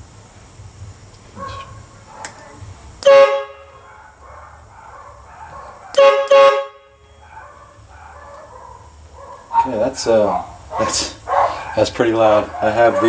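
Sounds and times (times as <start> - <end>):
air horn blasts: 3.0 - 3.8, 5.9 - 7.2.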